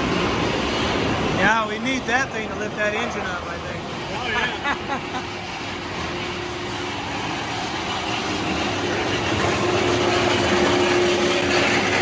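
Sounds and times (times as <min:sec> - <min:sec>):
motor humming: 0:03.8 - 0:12.0.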